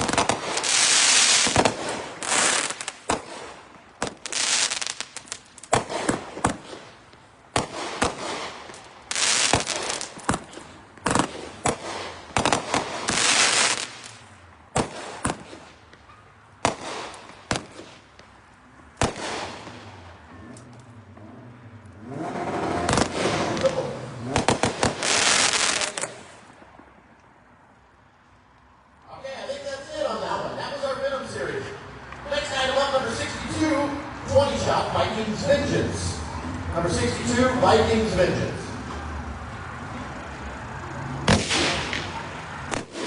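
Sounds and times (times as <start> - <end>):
firework hissing bursts: 0.0 - 7.0, 7.6 - 14.2, 24.4 - 26.4
firework cracks and reports: 22.9 - 26.4.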